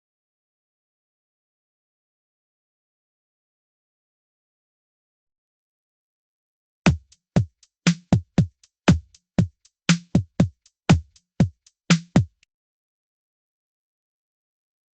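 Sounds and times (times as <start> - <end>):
drum machine kick drum: 6.9 - 12.4
hi-hat ticks: 6.9 - 12.4.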